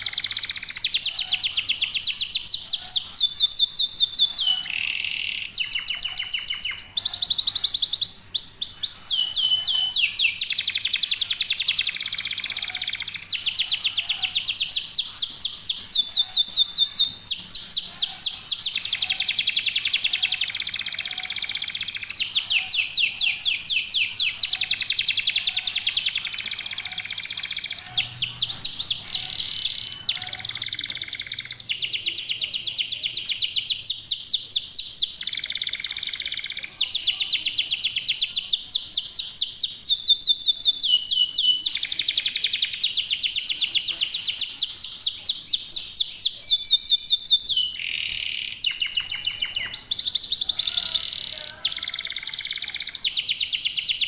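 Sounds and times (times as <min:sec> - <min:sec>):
canaries singing trills: 0:00.0 - 0:54.0.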